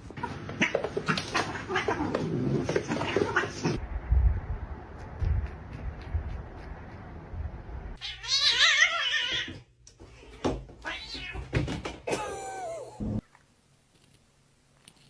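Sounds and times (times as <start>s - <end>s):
cat yowling and meowing: 8.0s - 9.6s.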